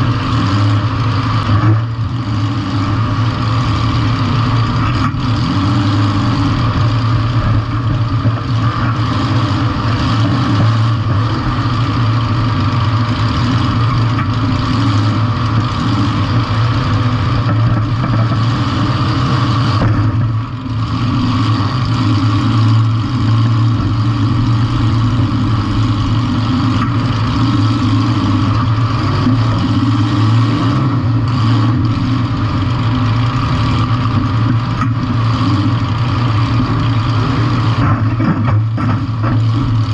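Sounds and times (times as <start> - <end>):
car engine running loud: 0.0 - 39.9.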